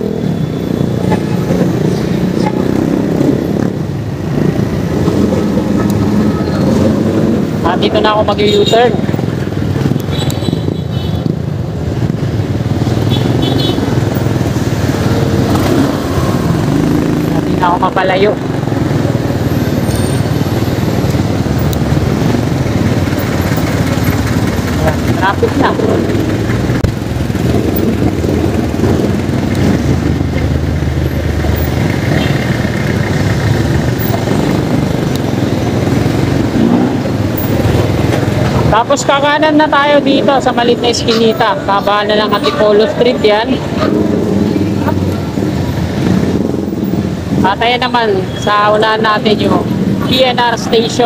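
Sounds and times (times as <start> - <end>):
road noise: 0.0 - 51.0
street traffic: 0.0 - 51.0
vehicle engine running: 18.4 - 38.8.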